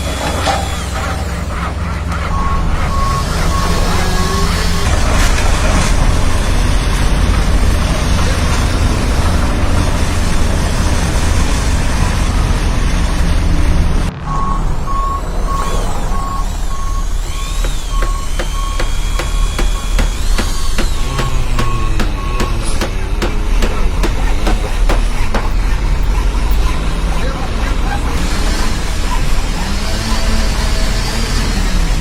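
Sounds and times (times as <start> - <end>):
reversing alarm beeping: 0.0 - 7.7, 14.2 - 23.6
heavy diesel engine running: 0.0 - 32.0.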